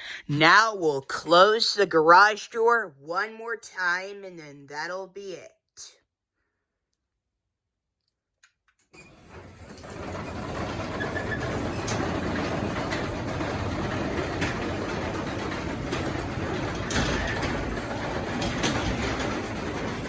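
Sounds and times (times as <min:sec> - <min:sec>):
garage door clicking in tracks: 0:08.8 - 0:20.0
garage door opener rumbling: 0:08.9 - 0:20.0.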